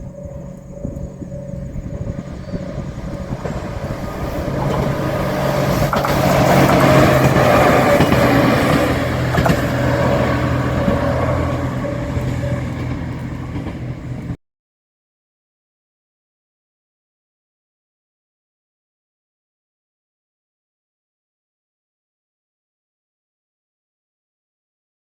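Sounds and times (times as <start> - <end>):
diesel railcar passing: 0.0 - 14.4
rush of train: 0.0 - 14.4.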